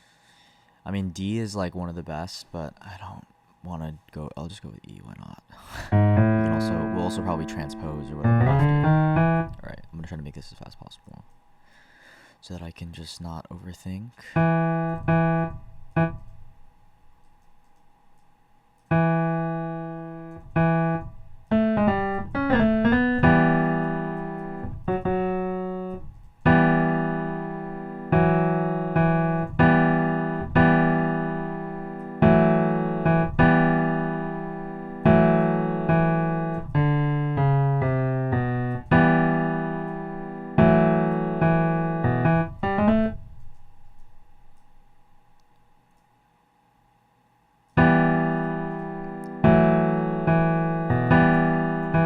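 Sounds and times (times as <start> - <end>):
piano chords ringing: 5.8 - 11.6, 14.2 - 45.3, 47.7 - 52.0
quick piano note runs: 5.9 - 9.8.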